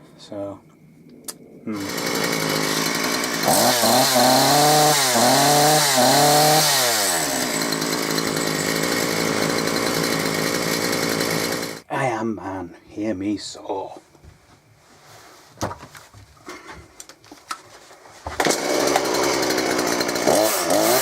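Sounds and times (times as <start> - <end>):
chainsaw idling and revving: 1.8 - 11.8, 18.4 - 21.0.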